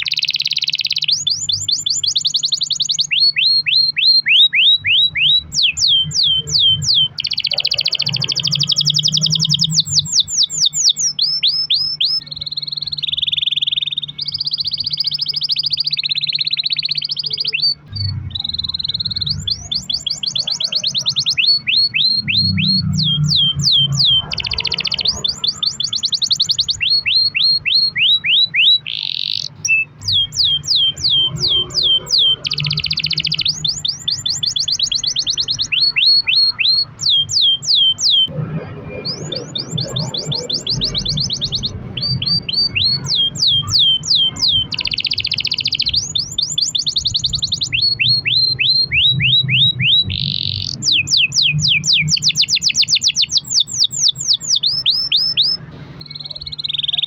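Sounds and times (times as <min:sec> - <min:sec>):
canary singing: 0:00.0 - 0:57.0.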